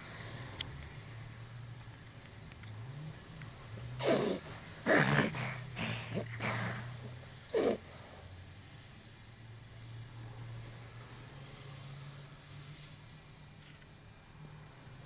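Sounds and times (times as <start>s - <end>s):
steady low hum: 3.6s - 8.4s
snoring: 3.8s - 8.2s.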